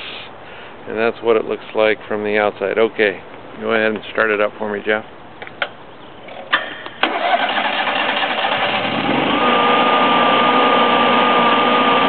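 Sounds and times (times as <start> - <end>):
generator engine cranking and running: 7.0 - 12.0.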